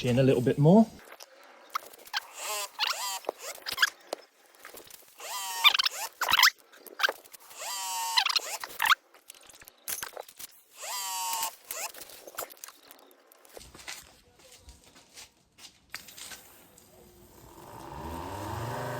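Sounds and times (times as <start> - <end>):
adjustment screw squeaking: 1.7 - 4.2, 5.2 - 9.0.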